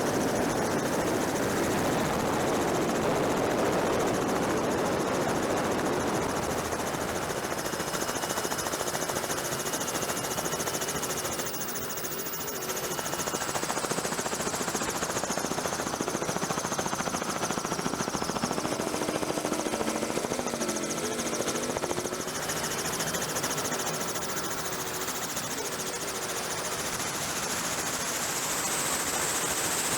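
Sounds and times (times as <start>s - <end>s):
turbine and wind rush: 0.0s - 11.5s
helicopter rotor beating: 0.0s - 29.9s.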